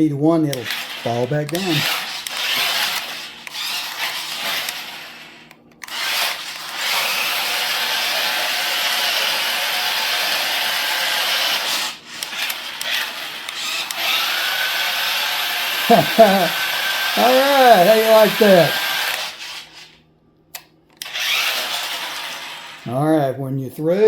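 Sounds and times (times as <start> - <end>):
rc car motors whirring: 0.5 - 20.0, 21.0 - 22.9.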